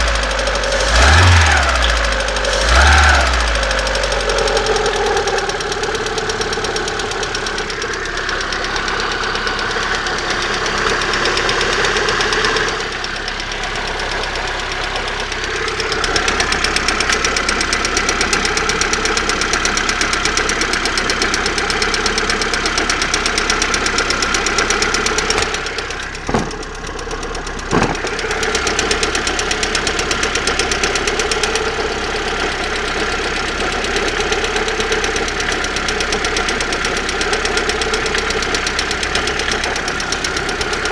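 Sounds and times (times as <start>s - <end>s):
car engine running: 0.0s - 11.6s, 23.9s - 29.5s
fast regular engine knock: 22.7s - 31.6s.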